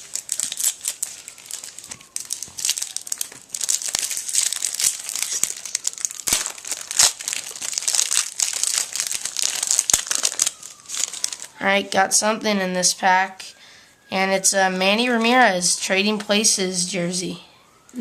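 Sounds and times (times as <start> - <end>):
wrapper crinkling and tearing: 0.0 - 11.6.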